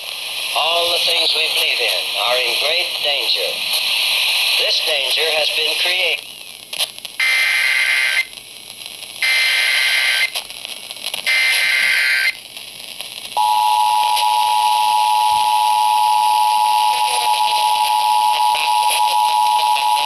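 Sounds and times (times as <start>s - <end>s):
two-tone attention signal: 13.4s - 20.0s.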